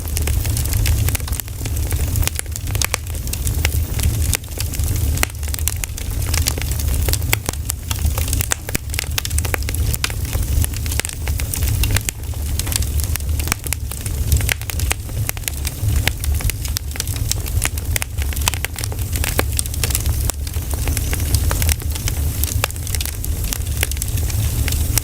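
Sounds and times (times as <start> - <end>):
low fire rumble: 0.0 - 25.0
pine cones crackling in campfire: 0.0 - 25.0.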